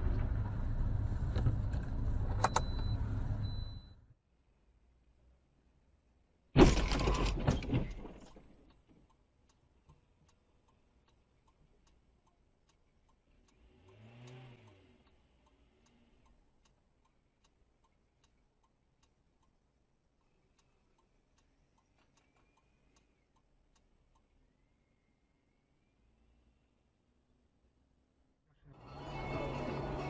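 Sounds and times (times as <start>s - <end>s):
car crash impact and crunching: 6.6s - 8.6s
indicator relay ticking: 9.0s - 24.4s.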